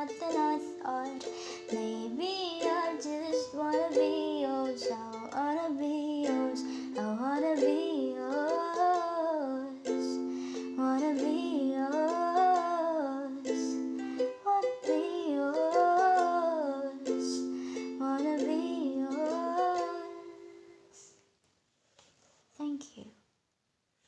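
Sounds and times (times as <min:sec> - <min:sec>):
person singing wordless melody: 0:00.0 - 0:20.9
strummed acoustic string instrument: 0:09.7 - 0:20.7.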